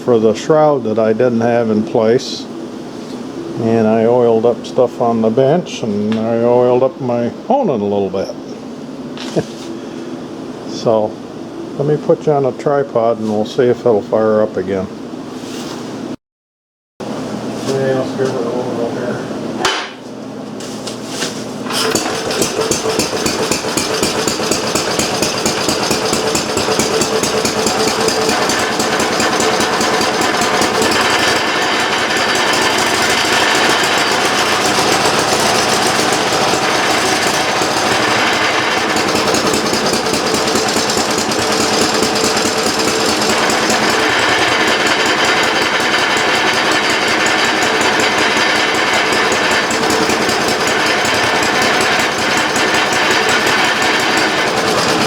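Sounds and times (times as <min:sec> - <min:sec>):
small engine starting and running: 0:21.6 - 0:55.0.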